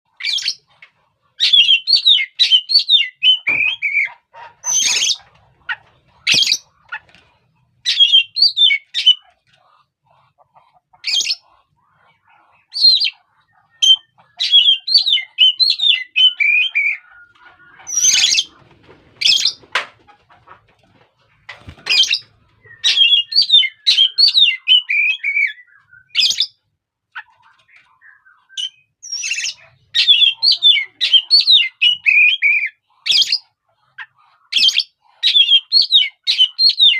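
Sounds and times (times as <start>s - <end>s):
bird whistled song: 1.4s - 4.1s, 7.8s - 9.2s, 12.7s - 18.4s, 22.0s - 26.6s, 27.9s - 33.4s, 34.5s - 36.9s.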